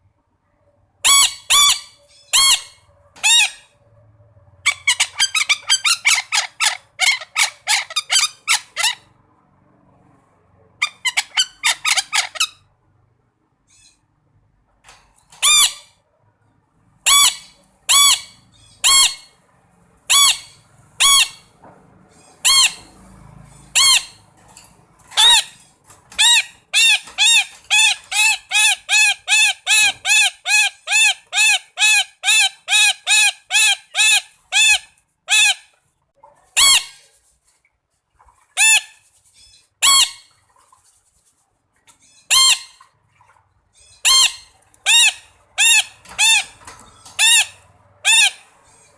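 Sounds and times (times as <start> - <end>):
parakeet calling loudly: 1.0 - 3.6, 4.7 - 9.1, 10.8 - 12.6, 15.4 - 15.9, 17.0 - 19.3, 20.1 - 21.5, 22.3 - 22.9, 23.7 - 24.2, 25.2 - 25.6, 26.2 - 35.7, 38.6 - 38.9, 39.8 - 40.3, 42.0 - 42.8, 43.8 - 48.9.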